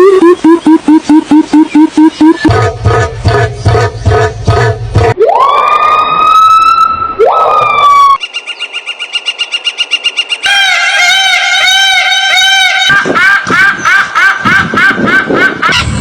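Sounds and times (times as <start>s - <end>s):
siren wailing and warbling: 0.0s - 2.8s, 5.0s - 8.2s.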